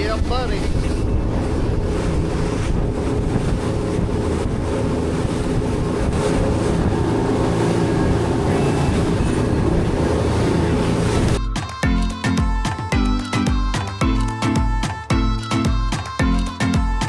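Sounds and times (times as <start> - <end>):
wind on microphone: 0.0 - 11.4
boat engine running: 0.0 - 17.0
water rushing: 0.0 - 17.0.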